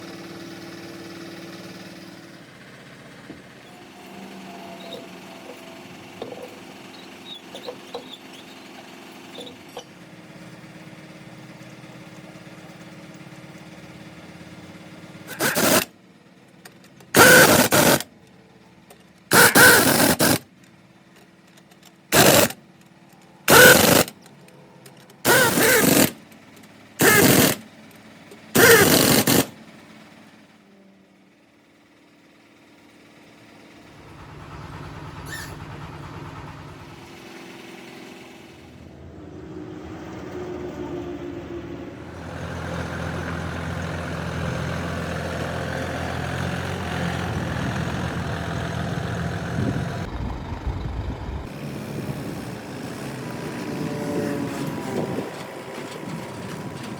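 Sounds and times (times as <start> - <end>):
pneumatic impact wrench bursts: 0.0 - 10.0, 15.2 - 16.0, 16.7 - 18.1, 19.3 - 20.5, 22.1 - 22.6, 23.4 - 24.3, 25.2 - 27.7, 28.3 - 29.7, 35.2 - 35.8.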